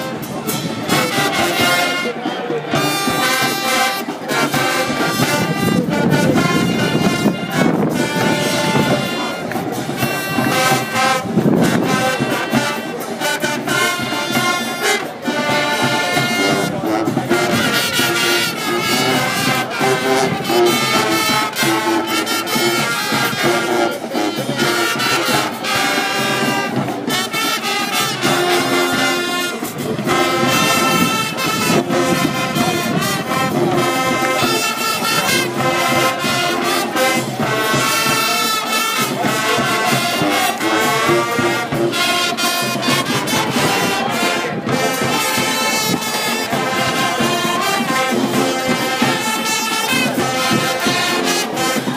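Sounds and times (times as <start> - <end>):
brass playing: 0.0 - 51.9
drumline beat: 0.0 - 51.9.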